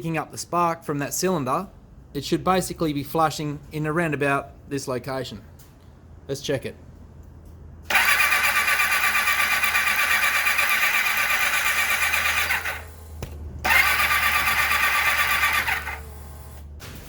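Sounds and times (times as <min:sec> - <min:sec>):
motorcycle engine cranking on starter: 0:07.9 - 0:13.0, 0:13.6 - 0:16.1.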